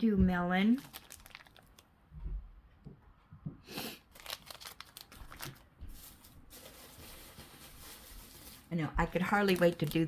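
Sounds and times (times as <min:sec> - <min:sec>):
packaging crinkling: 0:00.7 - 0:01.9, 0:04.1 - 0:10.0
packaging rustle: 0:00.8 - 0:01.9, 0:04.1 - 0:10.0.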